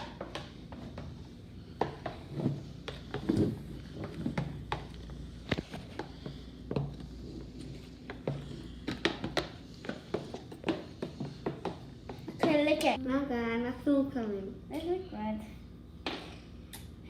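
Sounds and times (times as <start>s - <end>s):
utensil stirring thick mix: 0.0s - 12.9s.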